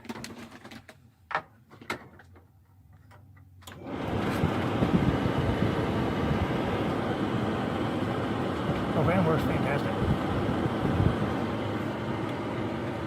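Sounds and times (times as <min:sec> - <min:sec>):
furnace blower rushing air: 0:03.7 - 0:13.0.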